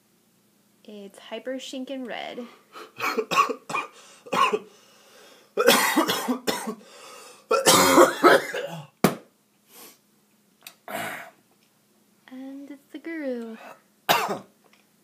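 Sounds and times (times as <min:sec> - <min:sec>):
person coughing: 0:03.0 - 0:04.7, 0:05.6 - 0:06.9, 0:07.5 - 0:08.9, 0:13.6 - 0:14.5
throat-clearing: 0:10.8 - 0:11.4.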